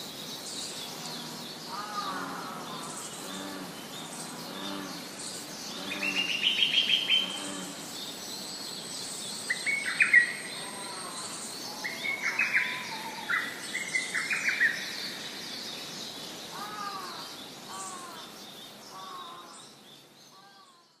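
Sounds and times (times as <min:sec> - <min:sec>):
softer lower bird calls: 0:00.8 - 0:07.9.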